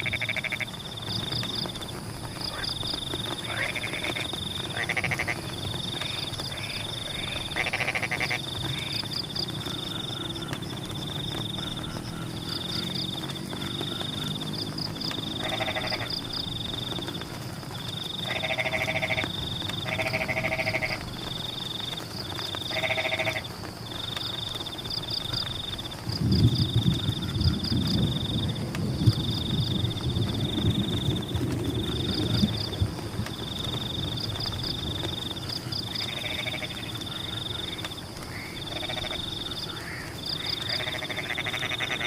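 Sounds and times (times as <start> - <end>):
loud pulsing frog croak: 0.0 - 0.8, 2.4 - 17.0, 18.0 - 21.0, 22.5 - 23.6, 35.9 - 42.0
high steady frog call: 0.0 - 1.3, 2.2 - 26.0, 33.5 - 42.0
frogs calling: 0.0 - 42.0.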